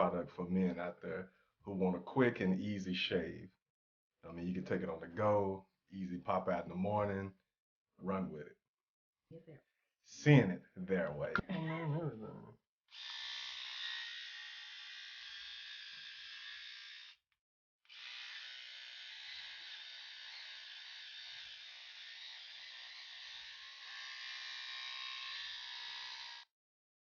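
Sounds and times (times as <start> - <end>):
battery groomer buzzing: 12.9 - 17.2, 17.9 - 26.5.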